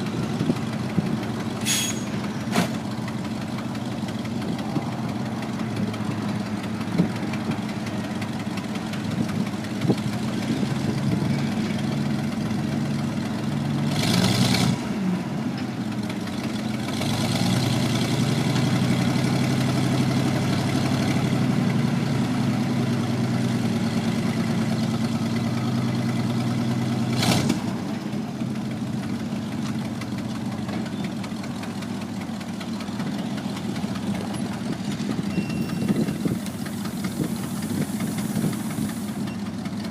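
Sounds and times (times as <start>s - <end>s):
truck engine idling: 0.0s - 14.0s, 15.1s - 39.9s
short hiss: 1.6s - 2.1s.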